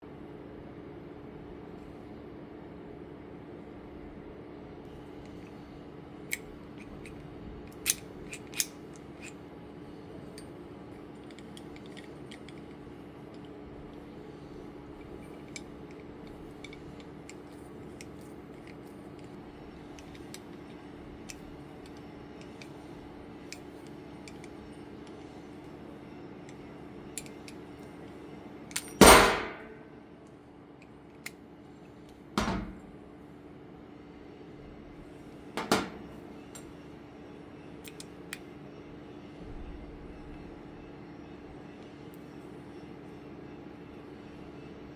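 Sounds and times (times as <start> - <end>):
steady low hum: 0.1 - 44.7
clicks of tool being handled: 6.3 - 9.4, 11.2 - 13.5, 23.5 - 24.6, 27.2 - 27.6, 28.7 - 29.7, 35.6 - 36.7, 37.8 - 38.4.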